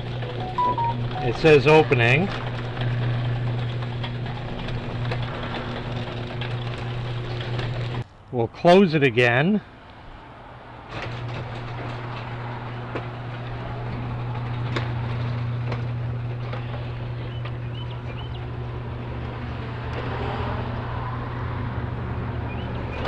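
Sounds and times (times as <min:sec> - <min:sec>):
garage door motor hum: 0:00.0 - 0:08.0, 0:10.7 - 0:23.0
garage door clicking and rattling: 0:01.7 - 0:08.0, 0:10.9 - 0:18.2.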